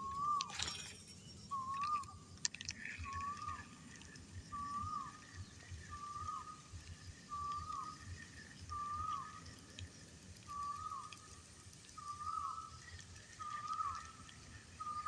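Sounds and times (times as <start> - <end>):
sharp clicks: 1.5 - 4.2.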